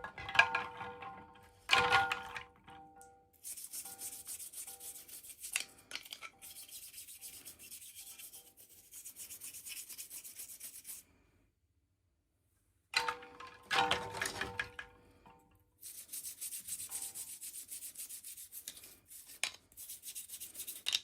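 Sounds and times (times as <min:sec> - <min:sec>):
rubbing and scratching on hard surface: 0:03.4 - 0:11.1, 0:15.8 - 0:21.0.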